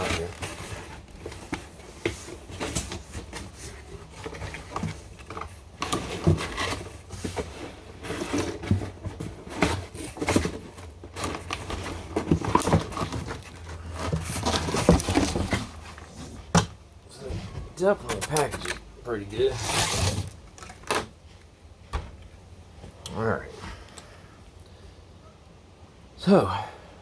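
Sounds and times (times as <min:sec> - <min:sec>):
cardboard rustling and scraping: 0:00.0 - 0:21.4.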